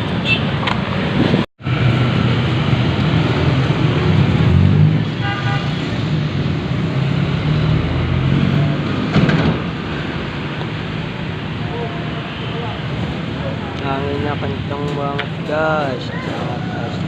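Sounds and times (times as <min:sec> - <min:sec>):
road traffic: 0:00.0 - 0:17.0
vehicle horn toot: 0:00.2 - 0:00.5, 0:05.2 - 0:05.8
wind rumbling on microphone: 0:00.6 - 0:05.0.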